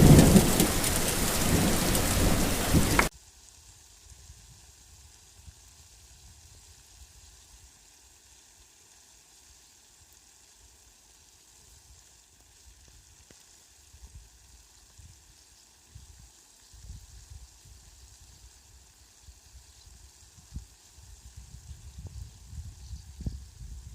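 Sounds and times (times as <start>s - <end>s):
low irregular rumbles: 0.0s - 3.1s
rain falling: 0.0s - 4.1s.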